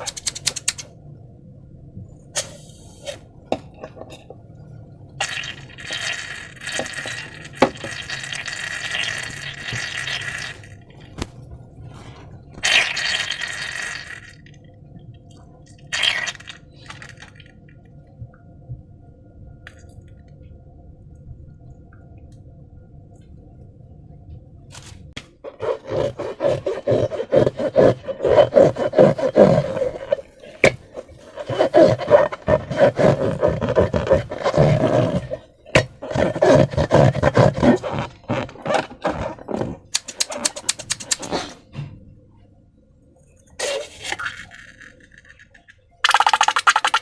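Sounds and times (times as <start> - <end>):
slime squishing: 25.5 - 41.5.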